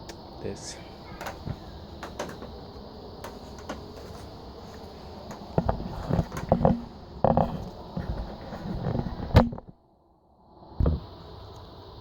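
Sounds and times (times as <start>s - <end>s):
plastic knocks and rustles: 1.2s - 9.8s.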